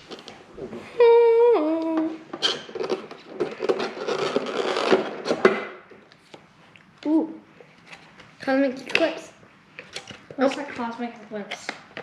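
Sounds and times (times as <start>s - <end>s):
person humming: 0.8s - 2.2s.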